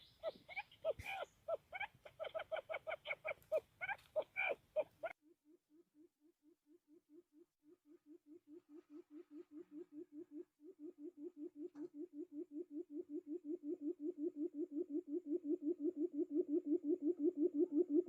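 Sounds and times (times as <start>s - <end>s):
quail call hooting: 0.0s - 5.2s.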